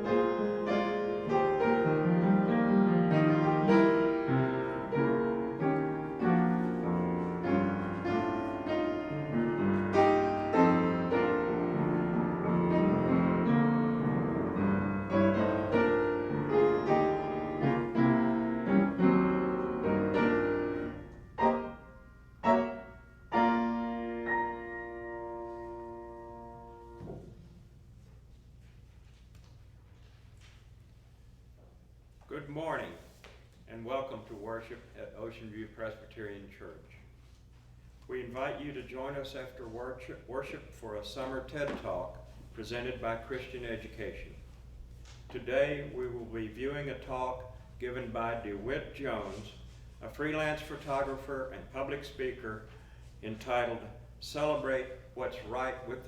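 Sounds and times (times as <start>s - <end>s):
solo piano music: 0.0s - 27.7s.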